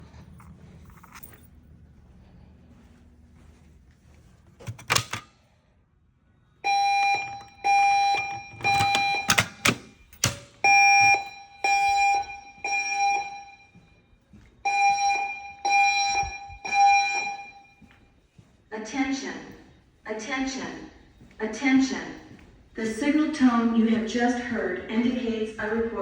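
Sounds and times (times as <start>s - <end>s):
pulsed fire alarm tone: 6.5s - 18.1s.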